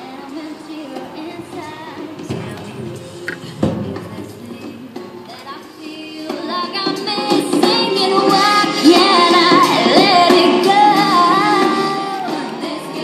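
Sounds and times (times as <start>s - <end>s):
woman singing song through small speaker: 0.0s - 13.0s.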